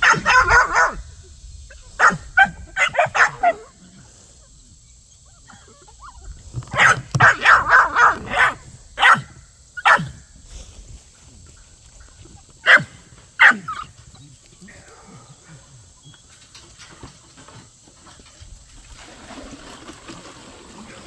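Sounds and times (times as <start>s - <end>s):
dogs barking: 0.0s - 1.1s, 1.7s - 4.0s, 5.3s - 10.3s, 12.6s - 16.0s.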